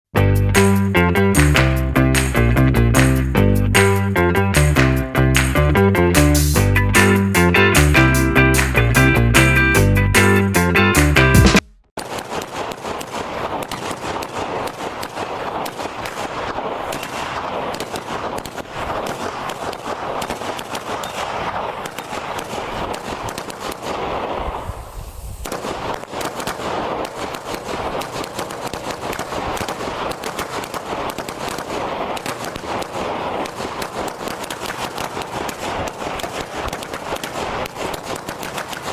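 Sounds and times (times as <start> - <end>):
firecrackers crackling: 11.4 - 38.9.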